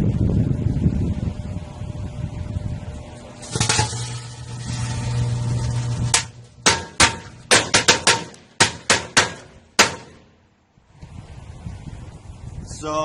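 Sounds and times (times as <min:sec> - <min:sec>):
microwave oven hum: 0:00.0 - 0:08.6
firecrackers exploding: 0:03.4 - 0:08.9.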